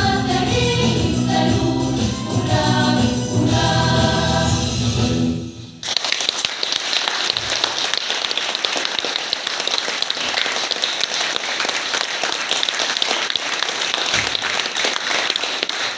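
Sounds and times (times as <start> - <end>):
audience applauding: 5.8 - 15.9.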